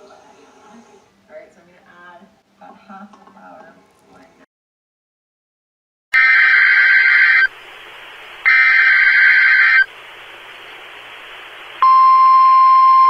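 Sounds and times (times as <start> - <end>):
screeching digital data bursts: 6.2 - 7.5, 8.4 - 9.9
steady alarm tone: 6.2 - 7.5, 8.5 - 9.9
radio hiss: 6.2 - 12.2.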